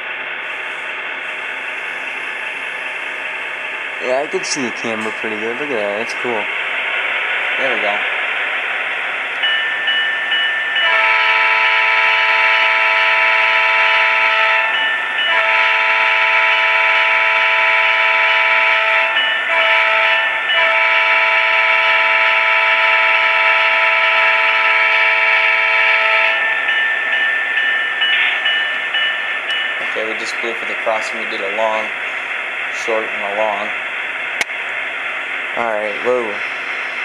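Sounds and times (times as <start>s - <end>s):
speaker hiss: 4.0s - 6.5s, 29.8s - 33.8s
model locomotive horn chord: 10.8s - 26.4s.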